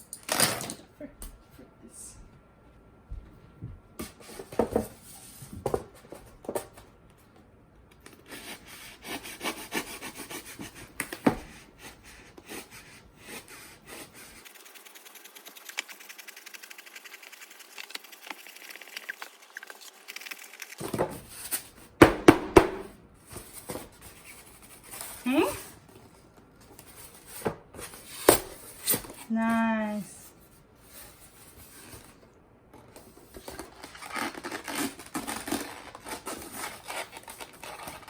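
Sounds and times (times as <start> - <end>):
knife sawing through styrofoam: 8.3 - 18.9, 33.6 - 38.0
knocks: 22.0 - 22.9.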